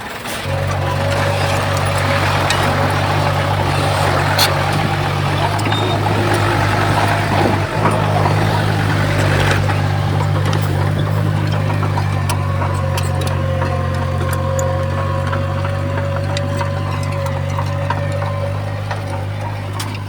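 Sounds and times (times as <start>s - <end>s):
heavy diesel machinery droning: 0.0s - 20.0s
metallic clicks and clanks: 0.4s - 20.0s.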